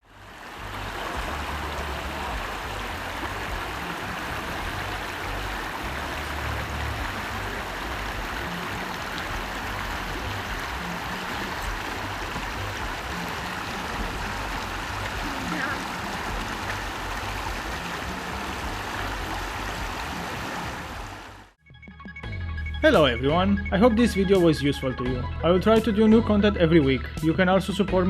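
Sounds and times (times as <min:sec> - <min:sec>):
stream water rushing: 0:00.0 - 0:21.6.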